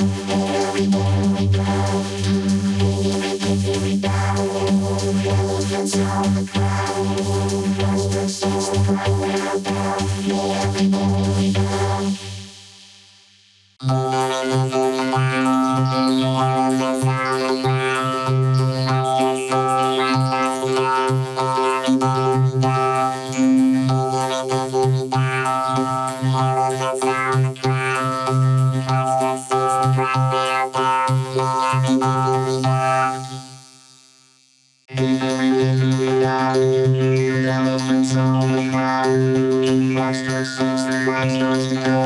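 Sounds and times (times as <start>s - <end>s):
synthesizer droning chord: 13.8s - 34.1s.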